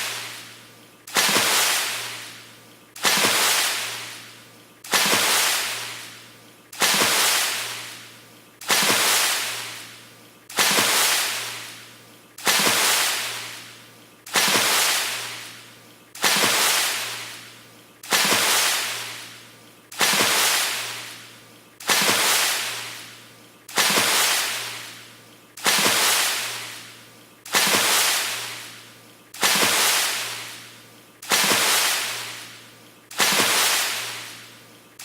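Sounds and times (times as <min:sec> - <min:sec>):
water splash: 0:01.1 - 0:02.4, 0:03.0 - 0:04.3, 0:04.9 - 0:06.2, 0:06.8 - 0:08.0, 0:08.6 - 0:11.8, 0:12.4 - 0:13.7, 0:14.3 - 0:15.6, 0:16.2 - 0:19.4, 0:20.0 - 0:25.0, 0:25.6 - 0:26.9, 0:27.5 - 0:28.8, 0:29.4 - 0:34.5.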